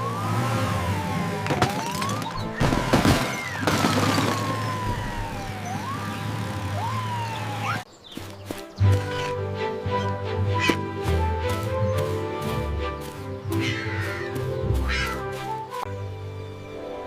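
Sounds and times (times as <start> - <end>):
police siren wailing: 0.0 - 7.9
background music: 8.4 - 17.0.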